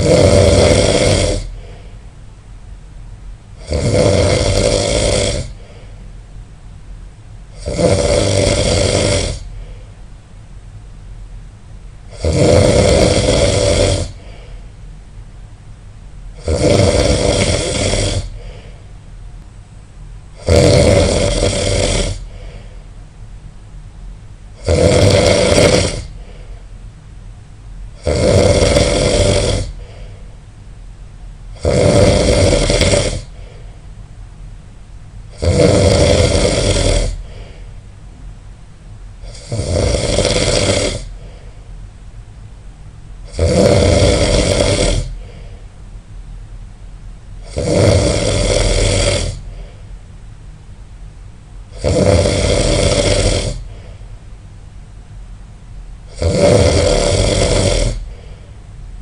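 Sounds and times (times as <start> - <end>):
person snoring loudly: 0.0 - 1.8, 3.6 - 5.8, 7.5 - 9.8, 12.1 - 14.5, 16.4 - 18.7, 20.4 - 22.7, 24.6 - 26.4, 28.0 - 30.1, 31.5 - 33.6, 35.3 - 37.7, 39.2 - 41.5, 43.2 - 45.5, 47.4 - 49.7, 51.7 - 54.0, 56.1 - 58.4.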